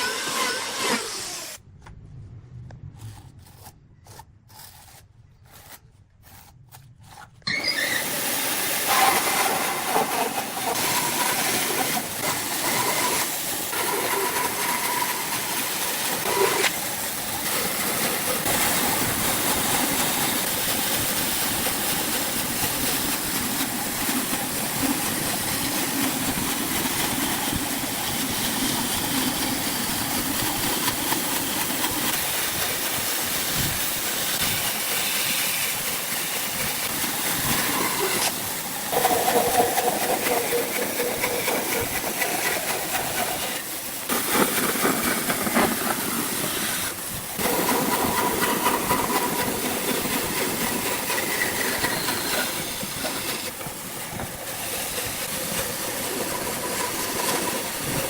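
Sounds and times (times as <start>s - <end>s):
woodworking power tool running: 0.0s - 1.6s, 7.5s - 58.0s.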